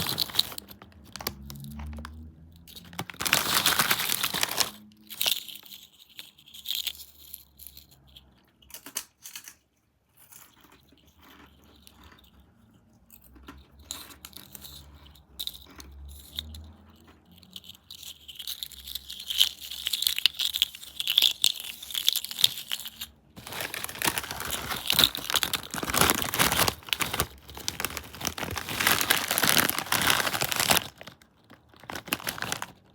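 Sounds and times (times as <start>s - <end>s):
snack bag crinkling: 0.0s - 6.9s, 18.3s - 32.9s.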